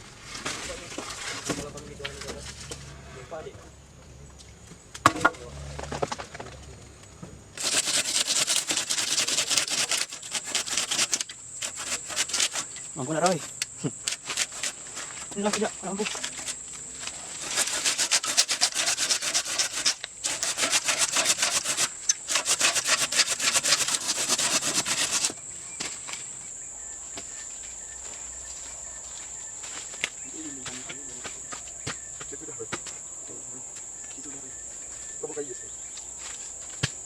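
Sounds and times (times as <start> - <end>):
high insect drone: 0.0 - 37.0
rasping scraping on wood: 7.6 - 14.9, 15.9 - 16.6, 17.4 - 25.4.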